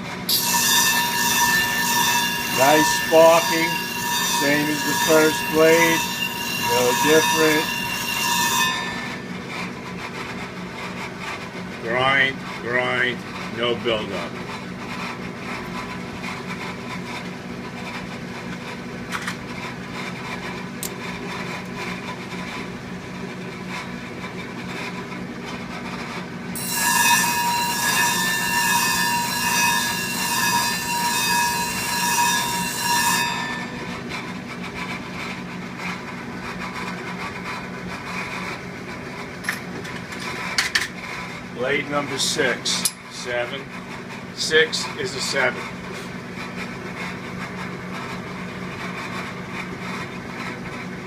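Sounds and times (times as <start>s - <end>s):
sharpening machine humming: 0.0s - 18.8s, 19.6s - 51.0s
blade screeching grind: 0.3s - 9.7s, 26.6s - 35.4s.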